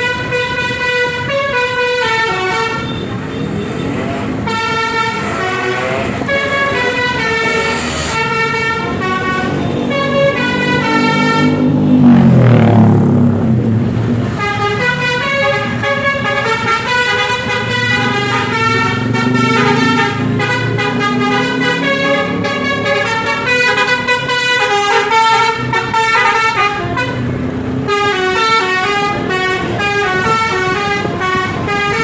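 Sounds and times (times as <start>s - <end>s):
bus horn playing a melody: 0.0s - 11.9s, 14.3s - 32.0s
low horn tone sliding downward: 1.0s - 13.5s, 14.4s - 27.2s.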